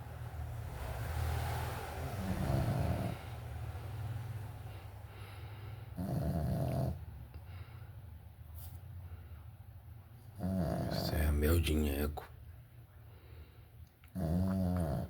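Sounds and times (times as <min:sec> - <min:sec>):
small dog snoring: 0:02.0 - 0:03.5, 0:05.9 - 0:07.1, 0:10.3 - 0:11.3, 0:14.1 - 0:15.0.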